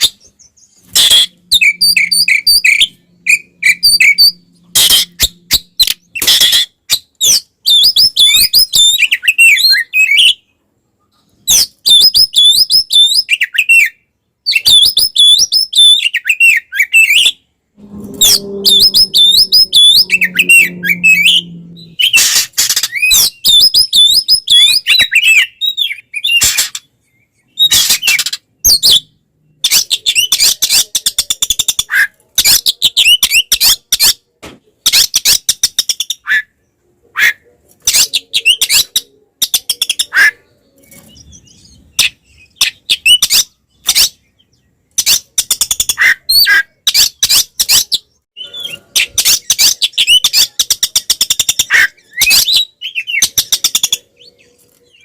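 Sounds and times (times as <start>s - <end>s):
low drone: 1.3s - 6.0s, 17.7s - 22.2s
bird singing chirped phrases: 15.9s - 27.6s.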